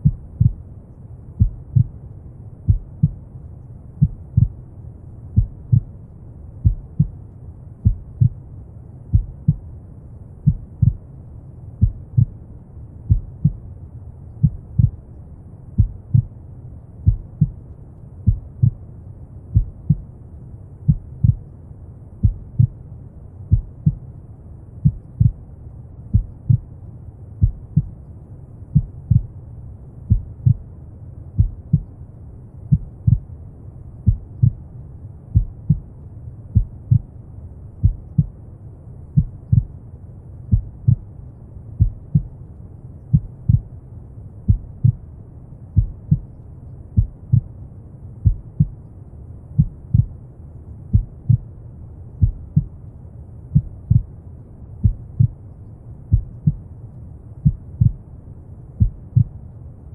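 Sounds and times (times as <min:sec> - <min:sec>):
slow heartbeat: 0:00.0 - 0:00.6, 0:01.4 - 0:02.0, 0:02.6 - 0:03.3, 0:04.0 - 0:04.6, 0:05.4 - 0:06.0, 0:06.6 - 0:08.4, 0:09.1 - 0:09.7, 0:10.4 - 0:11.1, 0:11.8 - 0:12.4, 0:13.1 - 0:13.7, 0:14.4 - 0:15.1, 0:15.7 - 0:16.4, 0:17.0 - 0:18.8, 0:19.5 - 0:20.2, 0:20.8 - 0:21.5, 0:22.2 - 0:22.8, 0:23.5 - 0:24.0, 0:24.8 - 0:25.4, 0:26.1 - 0:26.7, 0:27.4 - 0:28.0, 0:28.7 - 0:29.4, 0:30.0 - 0:30.7, 0:31.3 - 0:31.9, 0:32.7 - 0:33.3, 0:34.0 - 0:34.7, 0:35.3 - 0:35.9, 0:36.5 - 0:37.1, 0:37.8 - 0:38.4, 0:39.1 - 0:39.8, 0:40.5 - 0:41.1, 0:41.8 - 0:42.4, 0:43.1 - 0:43.8, 0:44.4 - 0:45.1, 0:45.7 - 0:46.4, 0:47.0 - 0:47.5, 0:48.2 - 0:48.8, 0:49.5 - 0:50.2, 0:50.9 - 0:51.5, 0:52.2 - 0:52.8, 0:53.5 - 0:54.2, 0:54.8 - 0:56.7, 0:57.4 - 0:58.0, 0:58.7 - 0:59.4
deep brown noise rumble: 0:00.0 - 0:59.9.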